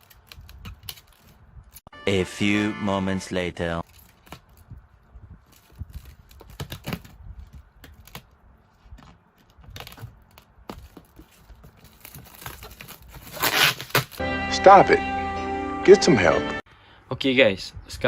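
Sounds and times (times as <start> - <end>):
packaging clicks and crinkling: 0.0 - 1.4, 3.8 - 4.7, 5.4 - 8.4, 9.3 - 14.2.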